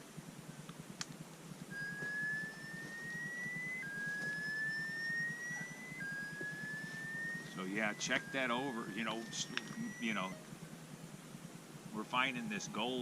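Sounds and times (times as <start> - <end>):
rising electronic tone: 1.7 - 10.7.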